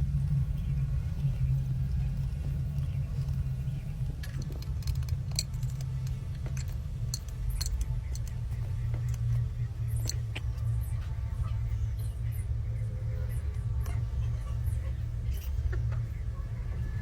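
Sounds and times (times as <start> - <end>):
steady low hum: 0.0 - 17.0
sharp metallic clicks: 4.1 - 10.7.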